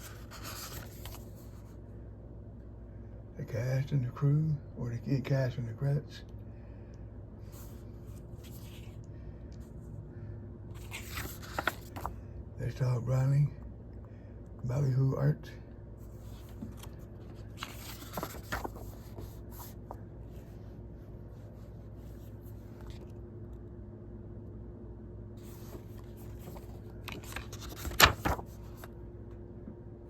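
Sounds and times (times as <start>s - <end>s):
paper pages turning and rustling: 0.0s - 1.8s, 7.5s - 9.0s, 10.7s - 12.2s, 16.0s - 20.6s, 21.4s - 23.2s, 25.4s - 29.0s
steady low hum: 0.0s - 30.0s.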